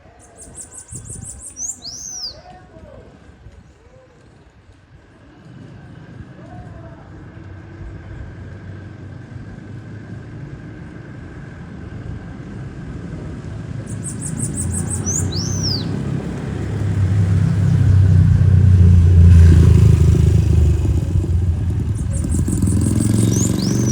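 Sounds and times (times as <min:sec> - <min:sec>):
bird singing: 0:00.1 - 0:02.5, 0:13.8 - 0:18.2, 0:20.8 - 0:23.9
vehicle engine passing: 0:05.5 - 0:23.9.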